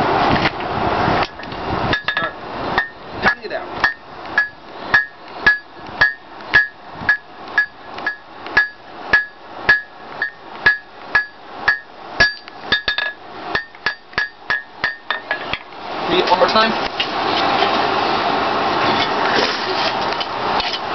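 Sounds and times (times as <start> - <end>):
hammer striking steel on anvil: 1.9 - 15.5.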